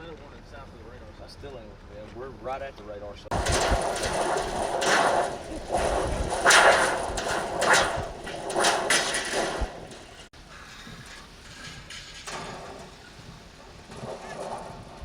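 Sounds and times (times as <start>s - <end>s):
strong wind gusting: 3.3s - 10.3s.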